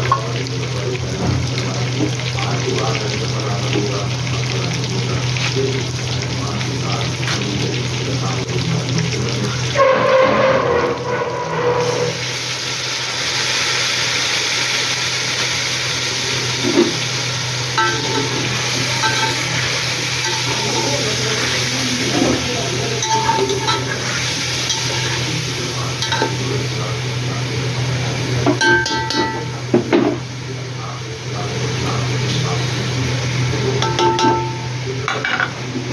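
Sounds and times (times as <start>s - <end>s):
food sizzling in hot oil: 0.0s - 35.9s
metal spoon scraping pot: 17.8s - 20.9s, 23.0s - 25.2s.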